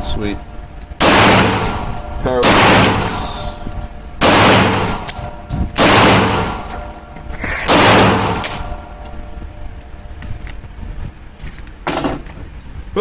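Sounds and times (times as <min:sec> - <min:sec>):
pistol shots echoing: 0:01.0 - 0:08.9.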